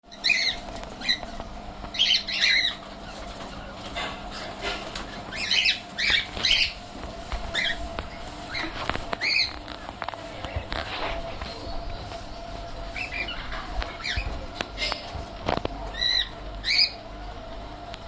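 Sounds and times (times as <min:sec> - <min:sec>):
birds chirping: 0:00.0 - 0:17.2.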